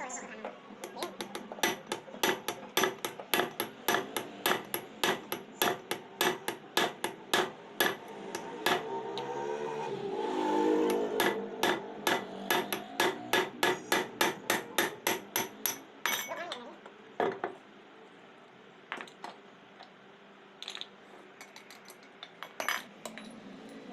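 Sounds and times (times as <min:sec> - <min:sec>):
hammer blows on metal part: 0:10.8 - 0:15.8.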